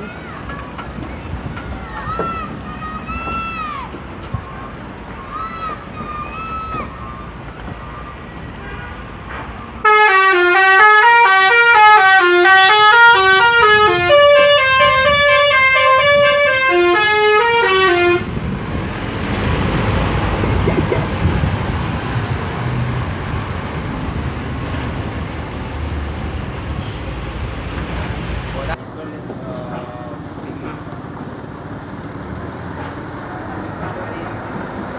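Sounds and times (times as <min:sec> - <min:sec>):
bus engine: 0:00.0 - 0:34.9
road noise: 0:00.0 - 0:34.9
musical air horn playing a tune: 0:09.8 - 0:18.3.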